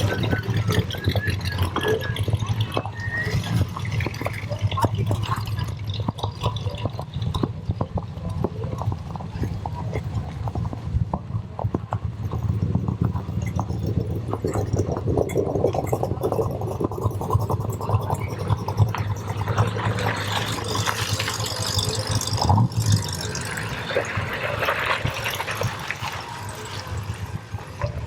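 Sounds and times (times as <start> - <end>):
engine pulsing unevenly: 0.0 - 28.0.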